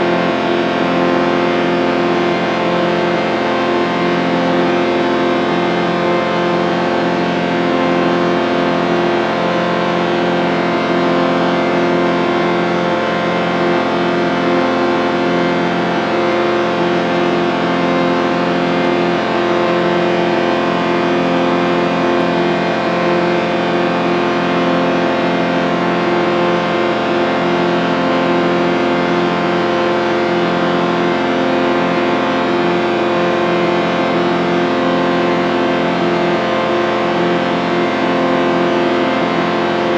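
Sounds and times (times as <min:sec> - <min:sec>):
distorted sustained chord: 0:00.0 - 0:39.9.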